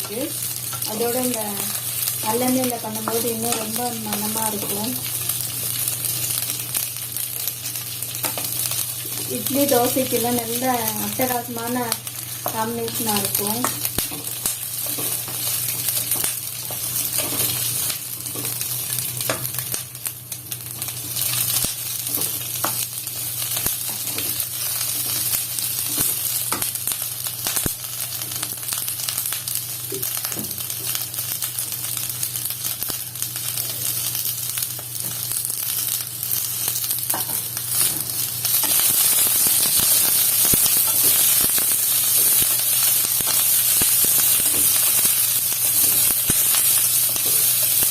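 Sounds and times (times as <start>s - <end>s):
peppers and garlic frying in oil: 0.0s - 47.9s
small crackles and clicks: 0.1s - 37.0s, 38.5s - 47.9s.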